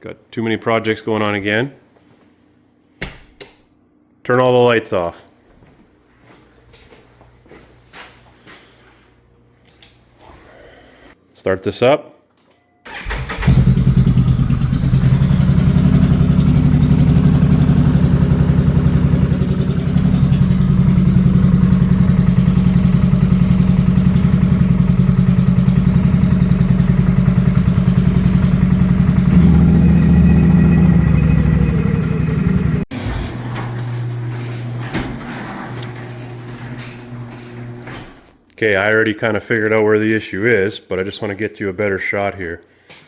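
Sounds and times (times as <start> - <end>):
engine running with pulsing beat: 13.6 - 32.9.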